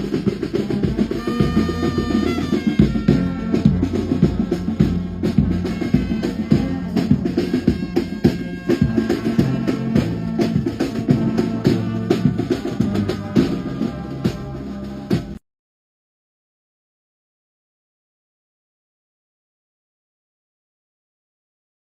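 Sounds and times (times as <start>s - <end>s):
bass drum and snare beat: 0.0s - 15.4s
low brass chords: 0.0s - 15.4s.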